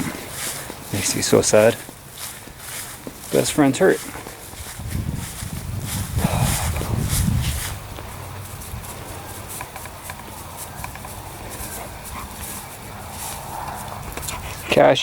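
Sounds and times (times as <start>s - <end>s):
dog rustling: 0.0s - 14.9s
faint clicks and taps: 9.5s - 11.8s.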